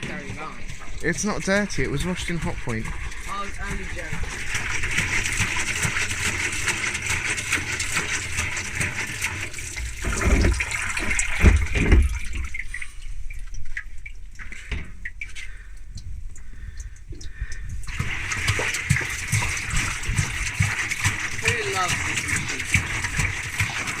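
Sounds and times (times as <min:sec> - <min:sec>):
water spraying in washing machine drum: 0:00.0 - 0:24.0
dull low thumps: 0:09.8 - 0:21.4.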